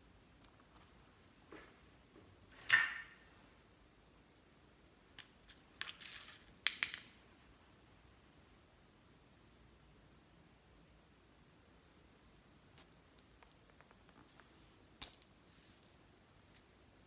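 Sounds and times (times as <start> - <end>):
small hard objects clicking: 5.2 - 7.2, 12.6 - 16.7.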